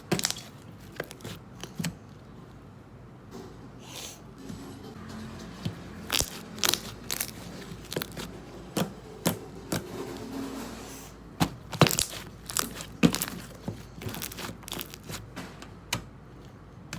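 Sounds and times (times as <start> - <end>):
crunchy slime crackling and popping: 0.0 - 1.4, 6.0 - 8.3, 11.5 - 15.3.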